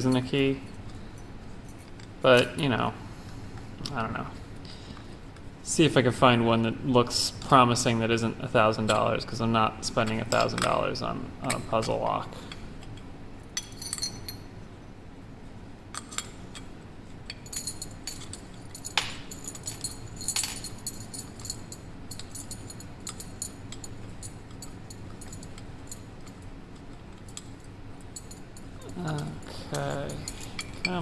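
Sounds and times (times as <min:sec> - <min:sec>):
keys and lock parts jingling: 0:13.6 - 0:14.5, 0:17.3 - 0:31.0.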